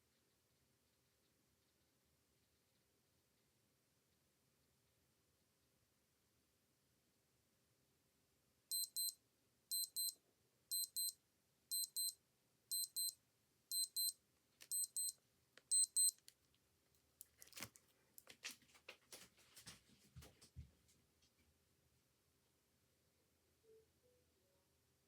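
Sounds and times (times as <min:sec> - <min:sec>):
watch alarm double beeps: 0:08.7 - 0:16.2
clicks and rustles: 0:17.2 - 0:20.6.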